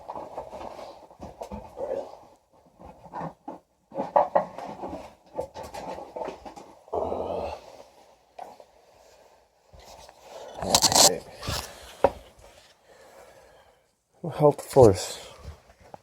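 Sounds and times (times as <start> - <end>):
rubbing and shuffling: 7.9 - 12.8.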